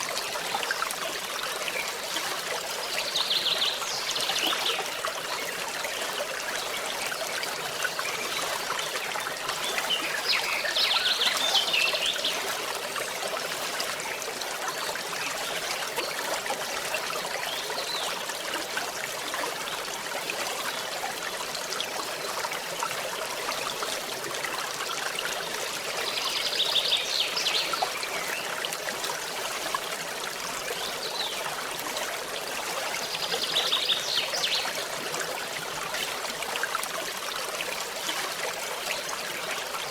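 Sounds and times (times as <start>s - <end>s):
stream trickling and babbling: 0.0s - 39.9s.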